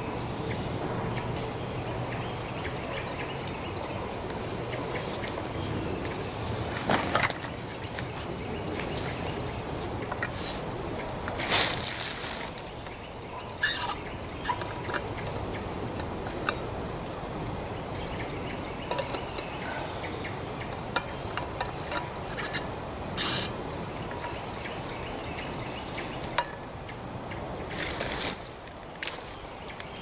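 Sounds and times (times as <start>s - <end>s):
steady background noise: 0.0s - 30.0s
short bird calls: 13.4s - 14.6s, 23.2s - 23.6s.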